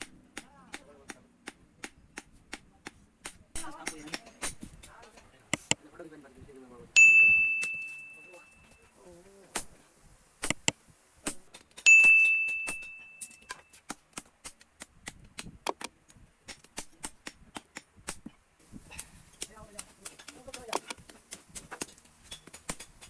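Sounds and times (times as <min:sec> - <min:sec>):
light hammer taps: 0:00.0 - 0:05.8
hammer striking steel on anvil: 0:07.0 - 0:08.3, 0:11.3 - 0:13.6.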